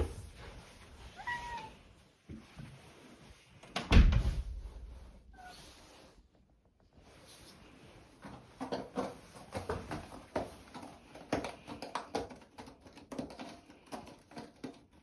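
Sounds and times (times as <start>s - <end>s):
cat meowing: 1.1s - 1.8s.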